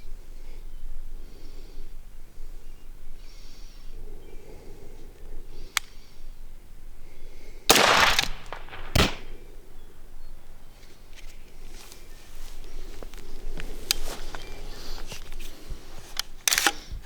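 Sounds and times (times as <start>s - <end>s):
rifle shots: 7.7s - 9.4s.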